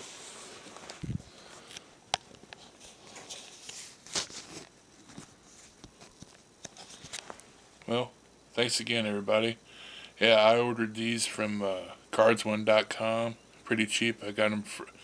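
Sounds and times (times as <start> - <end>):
paper rustling: 2.6 - 7.4.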